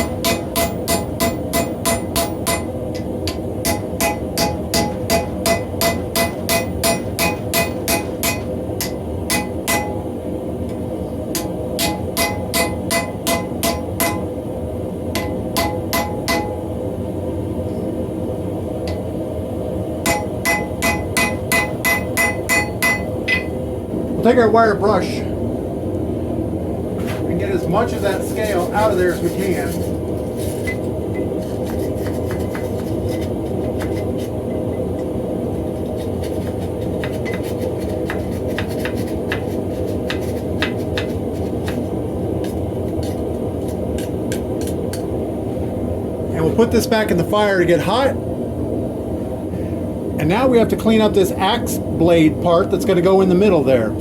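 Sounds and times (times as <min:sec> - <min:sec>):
hammer striking steel on anvil: 0:00.0 - 0:10.0, 0:11.3 - 0:14.3, 0:15.2 - 0:16.6, 0:20.0 - 0:23.6
wire brush scrubbing steel: 0:27.7 - 0:34.5, 0:35.6 - 0:44.8.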